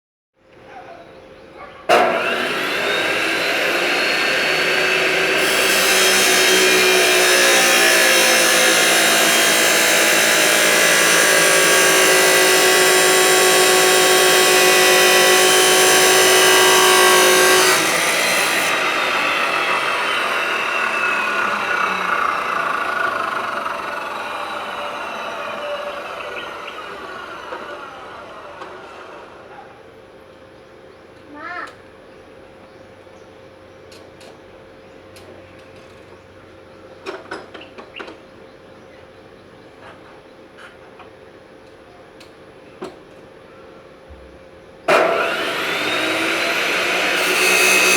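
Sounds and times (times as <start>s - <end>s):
grinder rasping on workpiece: 1.9s - 28.8s, 44.9s - 47.9s
angle grinder whine: 1.9s - 29.5s, 44.9s - 47.9s.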